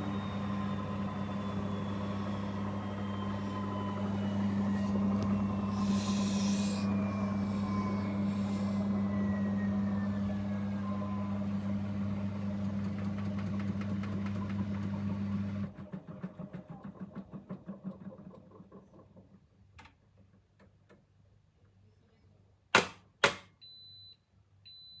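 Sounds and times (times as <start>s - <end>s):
washing machine motor whine: 0.0s - 18.1s.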